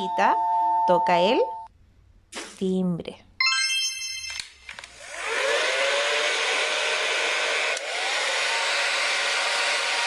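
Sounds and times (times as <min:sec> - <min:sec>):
hair dryer running: 0:04.8 - 0:10.0
hair dryer switch click: 0:07.7 - 0:07.9.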